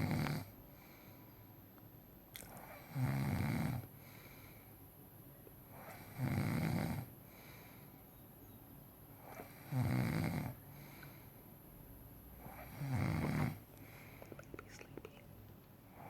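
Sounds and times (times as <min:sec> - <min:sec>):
man snoring: 0:00.0 - 0:00.5, 0:02.8 - 0:03.9, 0:05.8 - 0:07.1, 0:09.4 - 0:10.6, 0:12.4 - 0:13.6.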